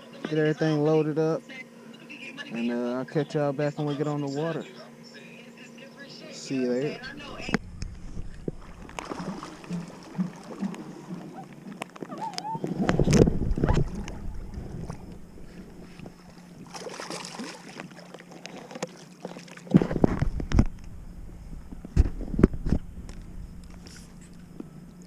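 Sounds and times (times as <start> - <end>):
water sloshing: 6.9 - 25.0
heavy rumbling: 7.0 - 11.2, 12.6 - 16.6, 19.8 - 24.9.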